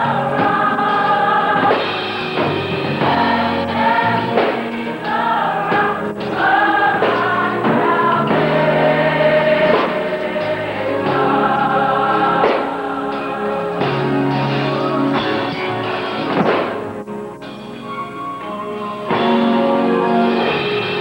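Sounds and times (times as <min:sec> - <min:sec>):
gospel choir singing: 0:00.0 - 0:17.0, 0:19.0 - 0:21.0.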